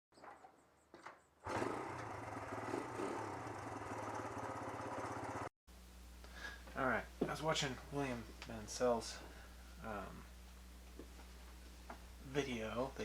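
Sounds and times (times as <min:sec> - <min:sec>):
small engine running: 0:01.4 - 0:05.5.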